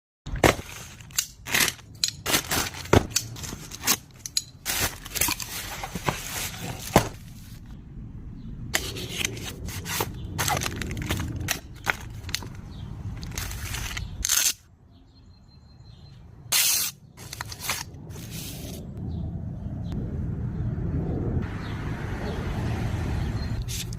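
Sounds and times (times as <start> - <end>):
packaging rustling and crackling: 0.4 - 7.6, 8.9 - 12.6
sharp clicks and scrapes: 23.6 - 23.9.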